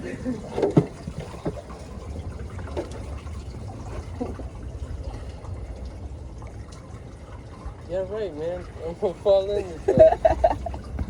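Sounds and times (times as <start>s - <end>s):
paddle swishing in water: 0.0s - 5.4s, 8.7s - 11.0s.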